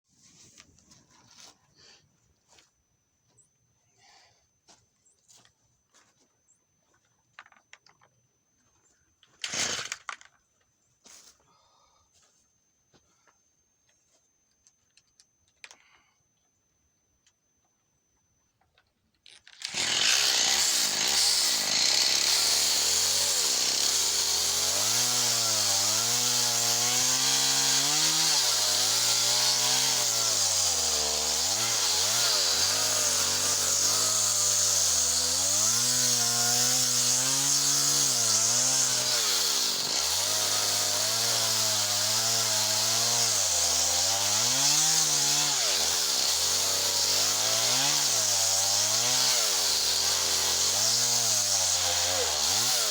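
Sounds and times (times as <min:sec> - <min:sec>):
chainsaw cutting a tree: 0:09.5 - 0:10.0, 0:19.6 - 0:52.9.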